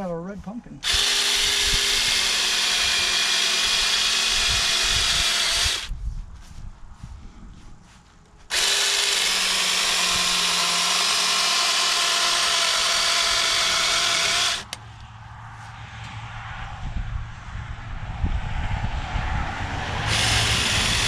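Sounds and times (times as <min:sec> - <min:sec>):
electric chainsaw cutting pumpkin: 0:00.8 - 0:05.9, 0:08.5 - 0:14.8, 0:20.0 - 0:21.0.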